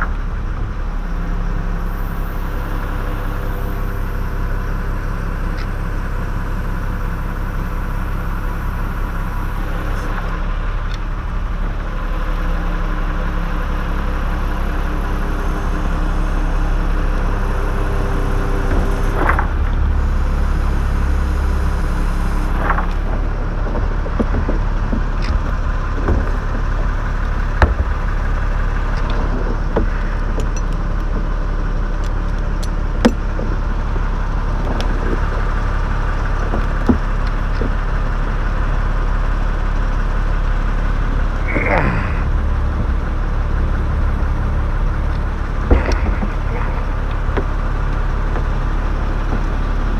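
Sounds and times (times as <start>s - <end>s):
engine idling: 0.0s - 49.9s.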